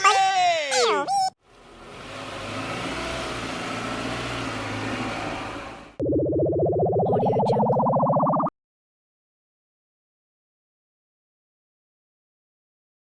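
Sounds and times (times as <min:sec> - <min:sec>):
engine rumble with hiss: 0:01.4 - 0:06.0
pulsing engine buzz revving: 0:01.6 - 0:08.4.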